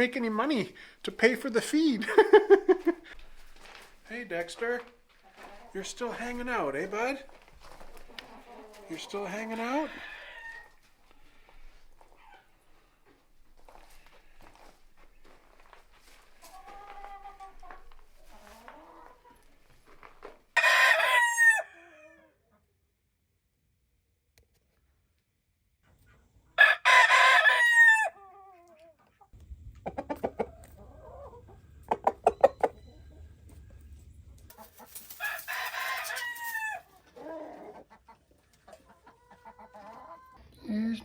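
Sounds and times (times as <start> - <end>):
hen clucking: 2.1 - 3.2, 5.2 - 10.8, 16.4 - 19.5, 28.2 - 33.6, 34.5 - 40.4
rooster crowing: 10.0 - 10.8, 20.6 - 22.0, 26.6 - 28.2, 35.1 - 36.9.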